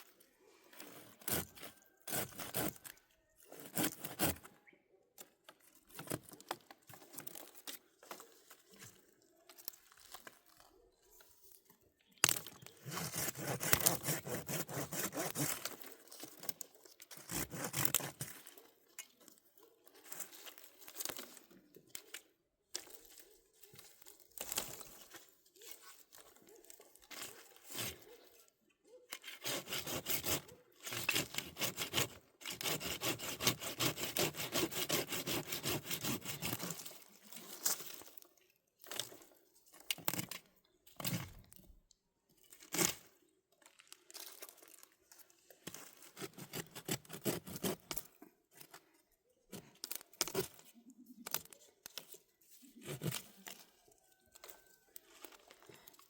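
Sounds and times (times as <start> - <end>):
rapid rasping and scraping: 12.8 - 16.5, 29.1 - 37.5.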